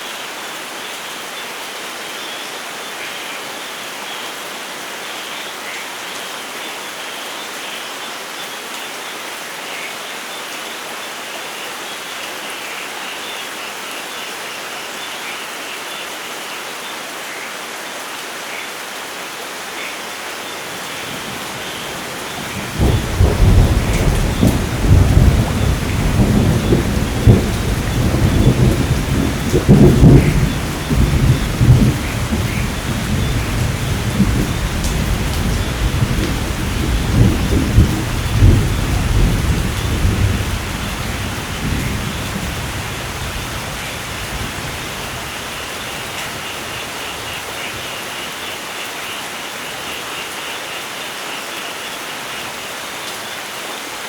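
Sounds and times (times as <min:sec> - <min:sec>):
steady rain falling: 0:00.0 - 0:54.0
thunder rolling and cracking: 0:20.9 - 0:46.1.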